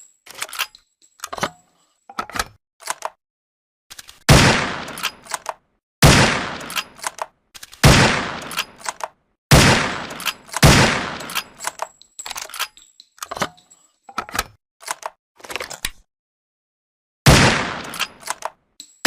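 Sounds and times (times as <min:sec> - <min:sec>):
metallic clicks: 0:00.0 - 0:03.2, 0:04.9 - 0:05.6, 0:06.6 - 0:07.8, 0:08.4 - 0:09.2, 0:10.0 - 0:16.0, 0:17.8 - 0:19.0
mechanical clicks and clacks: 0:02.2 - 0:03.2, 0:04.9 - 0:05.6, 0:06.6 - 0:07.8, 0:08.4 - 0:09.2, 0:10.0 - 0:13.6, 0:14.2 - 0:16.0, 0:17.8 - 0:19.0
rifle shots: 0:04.3 - 0:05.3, 0:06.0 - 0:07.1, 0:07.8 - 0:08.9, 0:09.5 - 0:11.5, 0:17.3 - 0:18.3.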